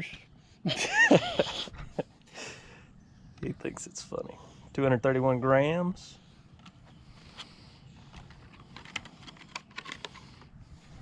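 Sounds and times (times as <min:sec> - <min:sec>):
plastic toys clicking and tapping: 0:08.2 - 0:10.4.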